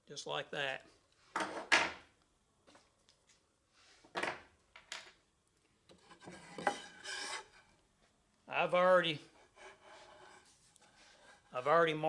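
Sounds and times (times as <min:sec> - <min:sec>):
wood and tools scraping on table: 0:05.9 - 0:07.8, 0:09.3 - 0:11.6.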